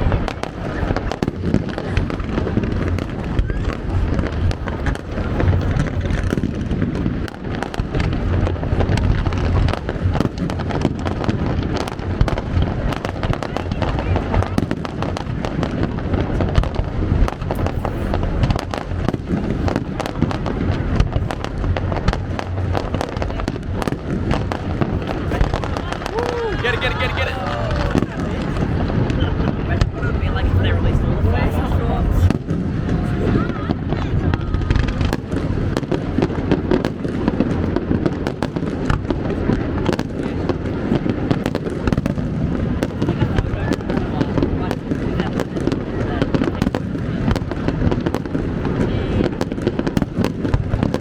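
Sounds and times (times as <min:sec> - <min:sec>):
constant rumble: 0:00.0 - 0:51.0
fireworks bangs and crackles: 0:00.0 - 0:51.0.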